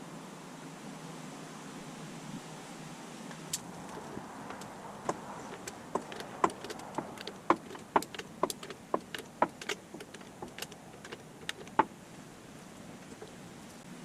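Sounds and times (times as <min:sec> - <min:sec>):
tools clicking and tapping: 0:03.9 - 0:11.9.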